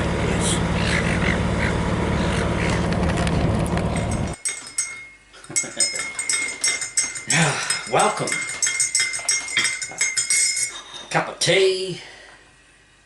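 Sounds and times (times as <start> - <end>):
cutlery clinking on crockery: 4.1 - 11.2.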